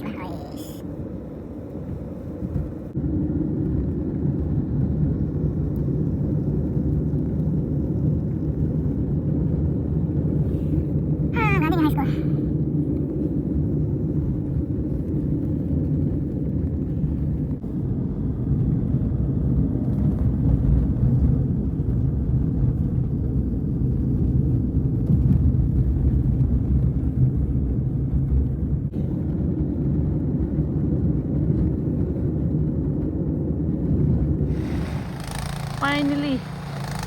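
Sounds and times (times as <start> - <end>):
snowblower engine running: 34.5 - 37.0.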